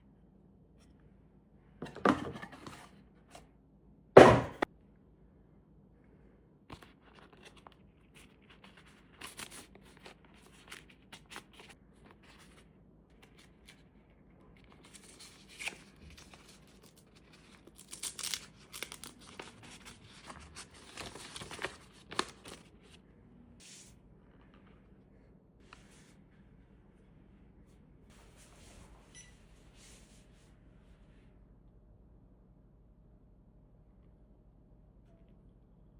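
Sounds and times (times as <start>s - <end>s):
packaging rustling and tearing: 14.7s - 22.7s.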